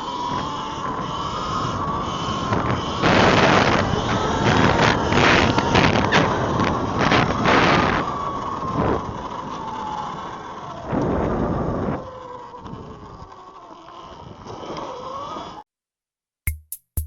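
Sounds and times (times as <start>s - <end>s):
wind buffeting microphone: 0.0s - 13.3s
electric motor whine: 0.0s - 15.6s.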